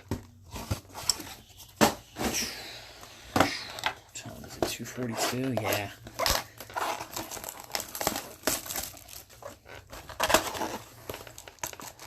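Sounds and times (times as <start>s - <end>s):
packaging crinkling and tearing: 3.7s - 12.0s.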